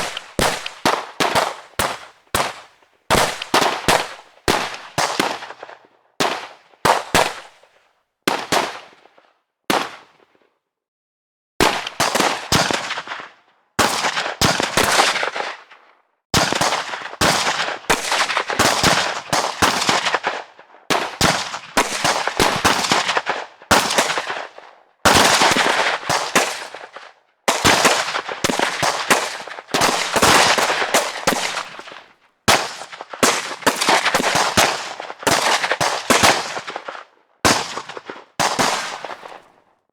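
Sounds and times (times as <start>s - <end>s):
rapid gunfire bursts: 0.0s - 5.6s, 16.4s - 39.3s
single gunshots: 0.0s - 5.6s, 16.4s - 39.5s.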